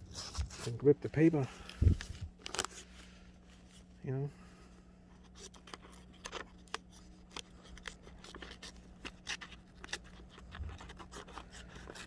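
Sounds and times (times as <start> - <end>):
scissors snipping paper: 5.3 - 12.0.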